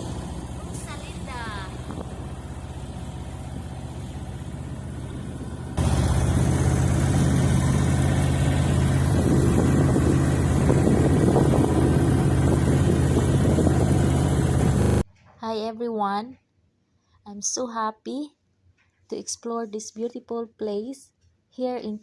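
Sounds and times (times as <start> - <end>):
boat motor humming: 0.0 - 15.1.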